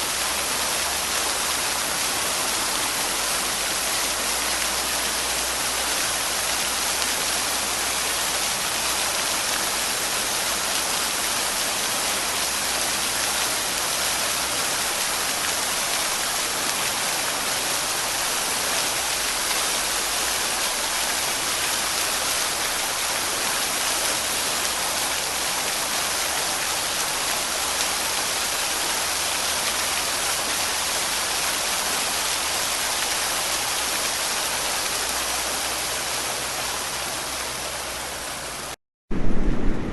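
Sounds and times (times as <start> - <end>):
waterfall rushing: 0.0 - 38.8.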